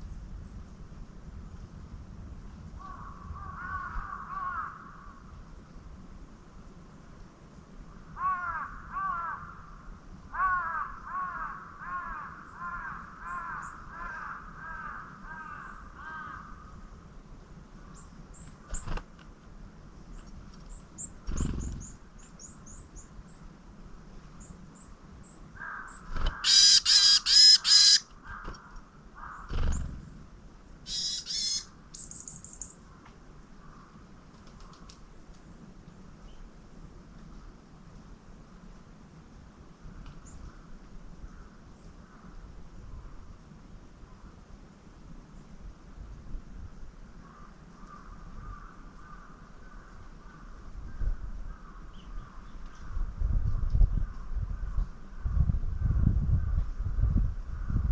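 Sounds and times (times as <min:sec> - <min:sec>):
crow cawing: 0:02.9 - 0:05.1, 0:08.2 - 0:09.7, 0:10.4 - 0:16.7, 0:25.6 - 0:29.5, 0:30.9 - 0:31.7, 0:47.2 - 0:49.9
small birds chirping: 0:17.9 - 0:19.0, 0:20.0 - 0:23.5, 0:24.3 - 0:30.3, 0:30.9 - 0:32.8.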